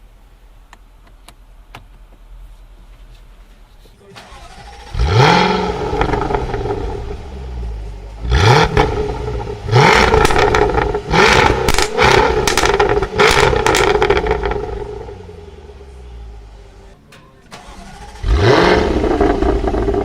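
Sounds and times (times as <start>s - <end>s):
car engine revving: 4.2s - 20.0s
exhaust crackles and pops: 5.4s - 7.2s, 8.1s - 15.2s, 18.4s - 20.0s.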